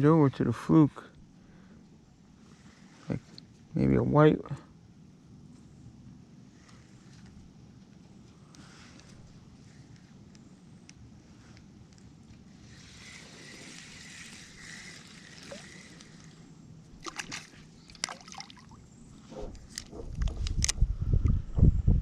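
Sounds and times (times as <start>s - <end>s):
water sloshing and trickling: 14.7s - 16.4s, 17.0s - 19.9s.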